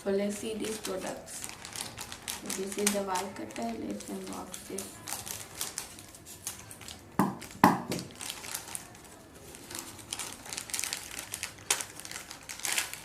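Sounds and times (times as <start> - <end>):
plastic packaging crinkling: 0.0 - 13.0
loud knocks: 7.2 - 8.1.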